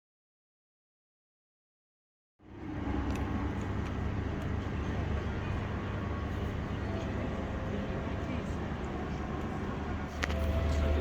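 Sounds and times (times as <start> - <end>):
low rumble of vehicle noise: 2.4 - 11.0.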